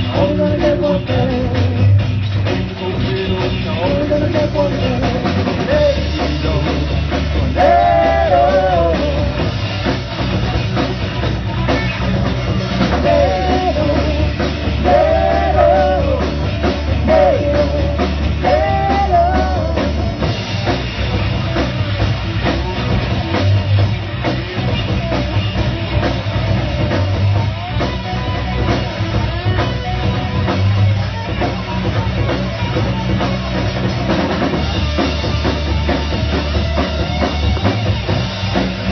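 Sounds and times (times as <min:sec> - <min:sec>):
live rock band playing: 0:00.0 - 0:38.9.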